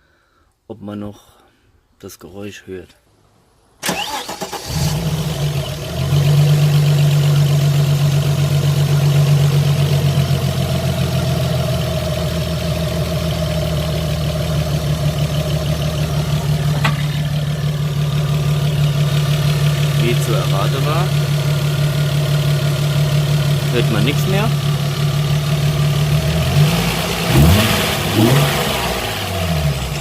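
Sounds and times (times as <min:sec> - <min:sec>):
engine starter cranking: 0:03.8 - 0:05.6, 0:16.5 - 0:17.7
car engine idling: 0:04.7 - 0:30.0.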